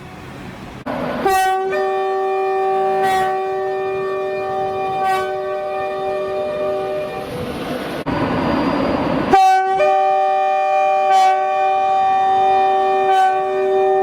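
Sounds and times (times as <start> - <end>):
two-tone train horn: 0.9 - 7.6, 9.3 - 14.0
rushing noise: 3.9 - 10.9.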